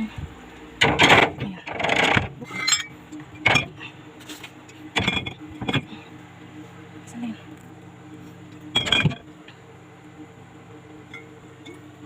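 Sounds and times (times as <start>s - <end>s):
items clinking against refrigerator shelves: 0.8s - 6.0s, 8.5s - 9.3s.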